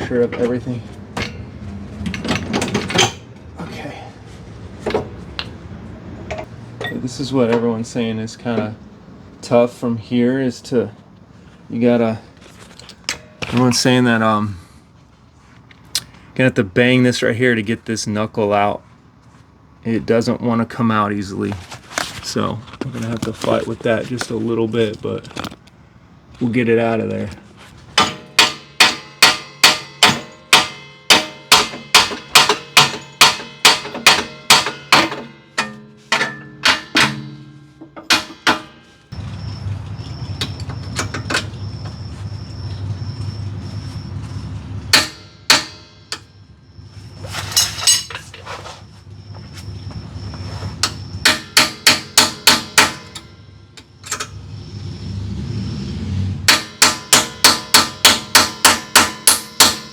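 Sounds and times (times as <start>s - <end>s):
hammer striking steel: 1.2s - 1.5s, 28.0s - 39.2s, 44.9s - 46.3s, 47.5s - 48.2s, 50.8s - 53.4s, 56.5s - 59.9s.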